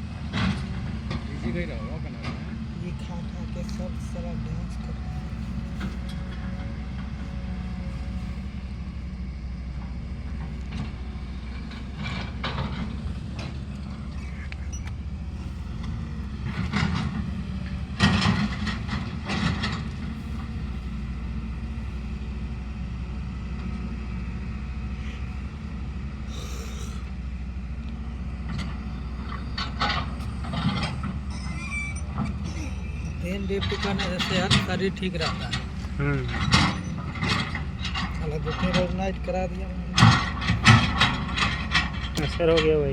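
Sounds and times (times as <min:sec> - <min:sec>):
vehicle engine droning: 0:00.0 - 0:42.9
knocks and rattles: 0:09.8 - 0:20.9, 0:28.5 - 0:31.4, 0:32.0 - 0:42.9.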